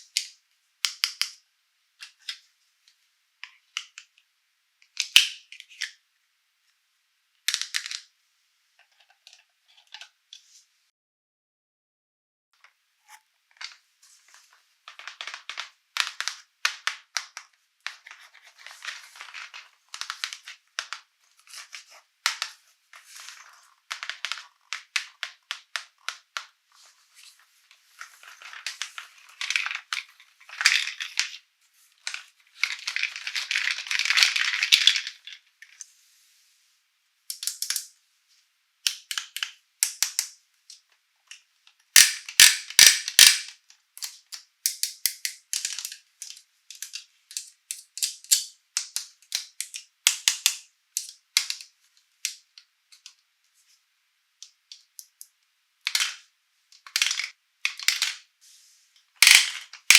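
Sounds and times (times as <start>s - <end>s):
plastic packaging crinkling: 17.4s - 25.4s.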